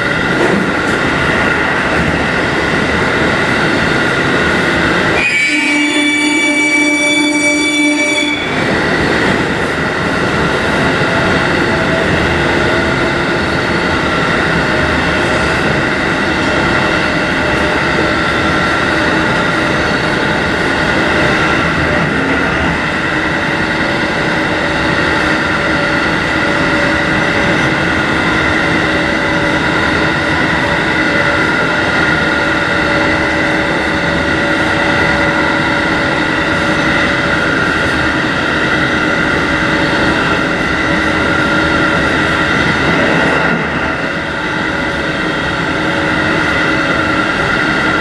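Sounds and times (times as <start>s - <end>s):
train wheels rumbling: 0.0s - 48.0s
train horn: 5.2s - 8.6s.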